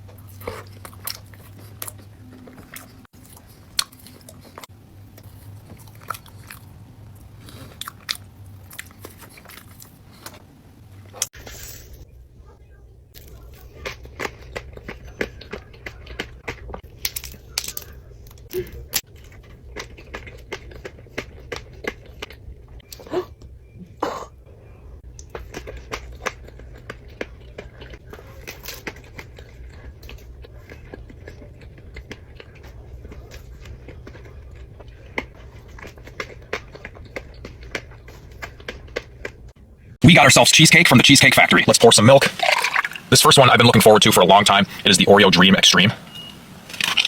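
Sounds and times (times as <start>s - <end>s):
wet chewing and lip smacks: 0.0s - 11.3s, 13.2s - 23.6s, 25.1s - 39.5s, 46.0s - 47.0s.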